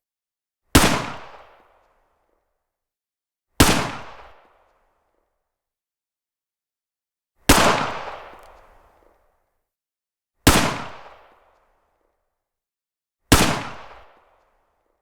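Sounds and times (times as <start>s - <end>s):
rifle shots with echo: 7.5s - 8.8s.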